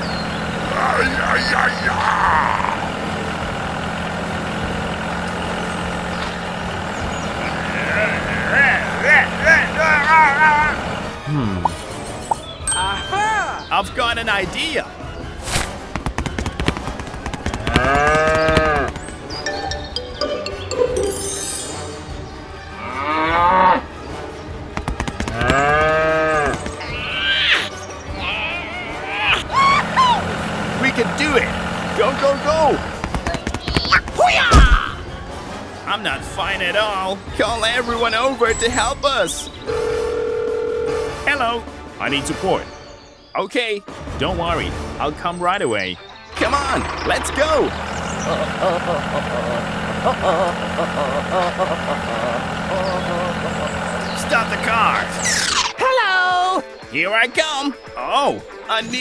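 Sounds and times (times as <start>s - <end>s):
diesel engine idling: 2.7s - 11.2s, 29.8s - 33.6s, 46.4s - 55.2s
cattle mooing: 7.4s - 10.8s, 17.7s - 18.9s, 22.8s - 23.8s, 25.4s - 27.6s.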